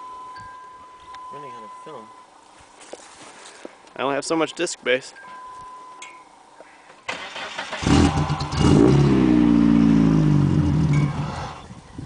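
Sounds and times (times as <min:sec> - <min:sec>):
car engine cranking and starting: 0:07.1 - 0:11.7.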